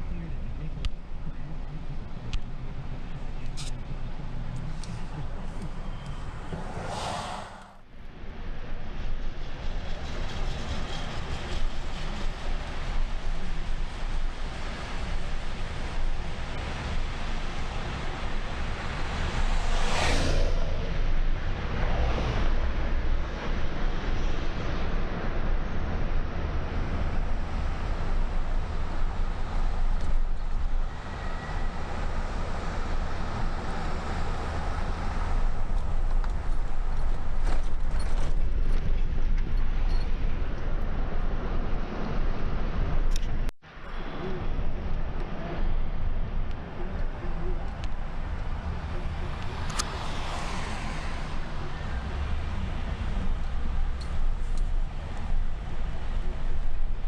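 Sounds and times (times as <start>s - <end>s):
car driving rumble: 0.0s - 24.2s, 24.8s - 57.0s
hissing noise: 6.4s - 7.8s.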